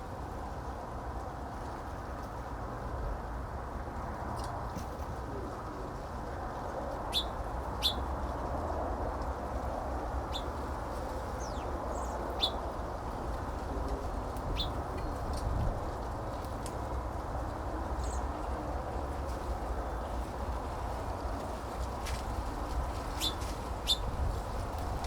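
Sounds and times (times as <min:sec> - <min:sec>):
birds chirping: 0:07.1 - 0:08.1, 0:10.3 - 0:12.8, 0:14.4 - 0:15.5, 0:23.1 - 0:24.1.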